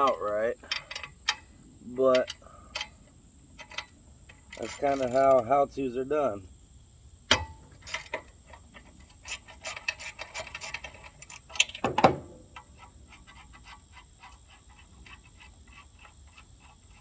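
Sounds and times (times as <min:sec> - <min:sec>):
metal tools clanking: 0:00.0 - 0:03.0, 0:03.6 - 0:05.5, 0:09.0 - 0:12.8.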